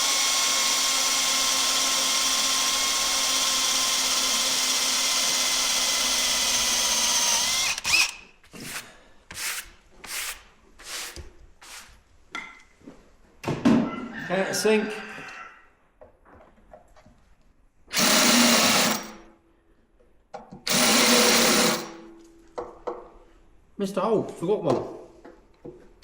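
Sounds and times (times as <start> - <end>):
electric drill whining: 0.0 - 8.3, 17.9 - 19.2, 20.7 - 22.0.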